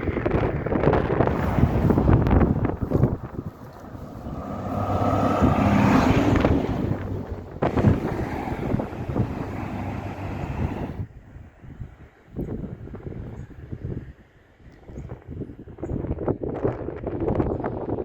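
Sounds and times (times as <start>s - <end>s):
wind buffeting microphone: 0.0s - 18.0s
engine passing by: 1.3s - 11.0s.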